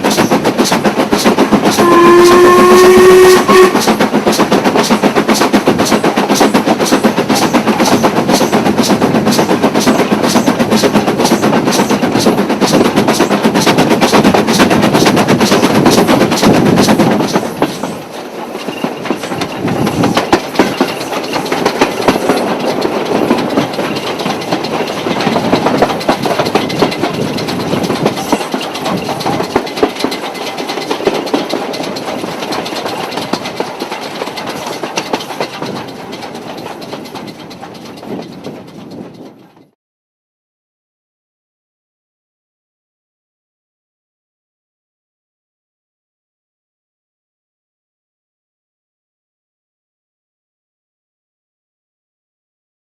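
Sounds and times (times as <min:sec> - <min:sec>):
steam locomotive chuffing: 0:00.0 - 0:39.8
wheels clattering over rails: 0:00.0 - 0:39.8.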